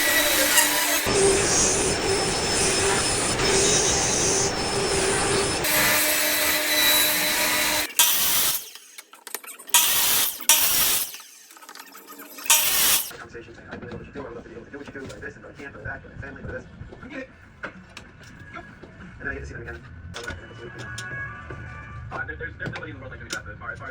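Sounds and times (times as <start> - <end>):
loud power tool bursts: 0.0 - 13.1
woodworking machine whirring: 0.0 - 13.1.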